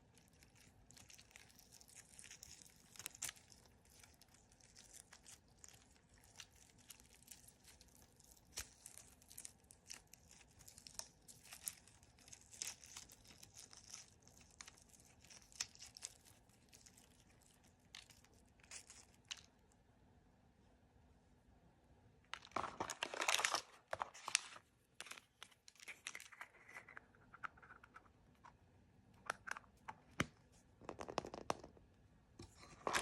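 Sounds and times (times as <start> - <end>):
plastic packaging crinkling and tearing: 0.2 - 19.5, 22.3 - 26.9, 32.7 - 33.0.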